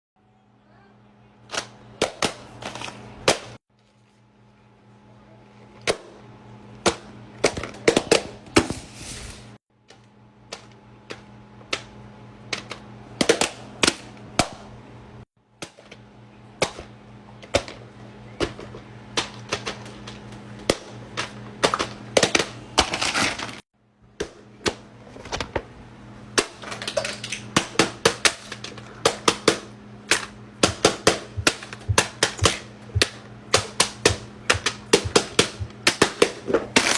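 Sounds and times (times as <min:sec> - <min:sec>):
steady low hum: 0:27.6 - 0:36.9.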